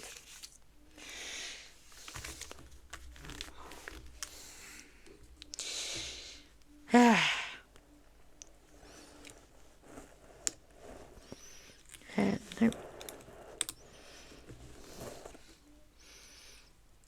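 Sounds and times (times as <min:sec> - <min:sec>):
man humming: 0:06.1 - 0:07.6, 0:12.1 - 0:12.8
plastic pieces clicking: 0:11.8 - 0:13.8.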